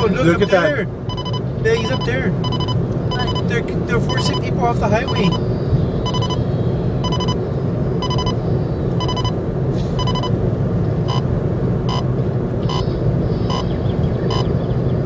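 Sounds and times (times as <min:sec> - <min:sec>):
electronic warning beep: 0:00.0 - 0:05.4, 0:06.0 - 0:07.4, 0:08.0 - 0:08.4, 0:09.0 - 0:09.4, 0:10.0 - 0:10.4, 0:11.1 - 0:11.3, 0:11.9 - 0:14.5
car interior rumble while driving: 0:00.0 - 0:15.0.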